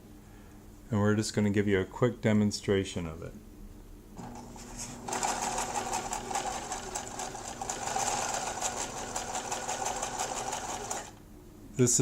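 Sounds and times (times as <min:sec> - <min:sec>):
sewing machine running: 0:04.2 - 0:11.2.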